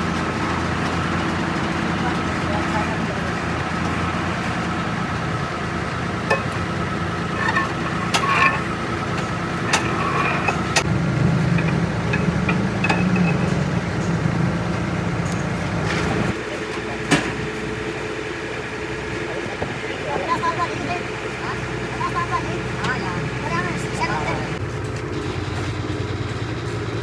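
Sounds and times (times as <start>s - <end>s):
engine running: 0.0s - 27.0s
metallic clinks and knocks: 6.3s - 6.7s, 7.3s - 14.2s.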